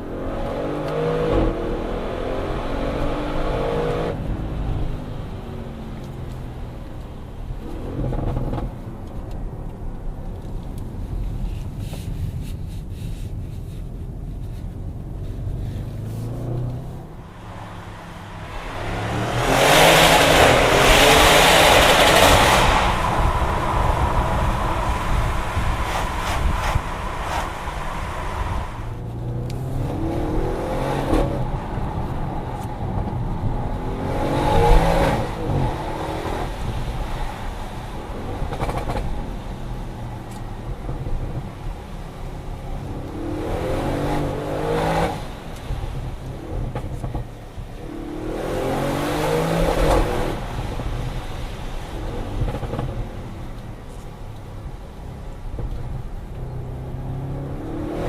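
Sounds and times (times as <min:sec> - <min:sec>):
car engine accelerating hard: 0:15.0 - 0:54.0.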